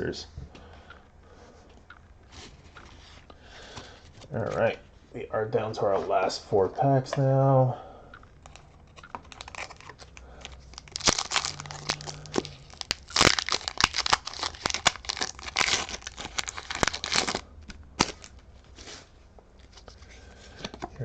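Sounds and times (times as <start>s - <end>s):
foil wrapper crinkling and tearing: 8.4s - 18.4s.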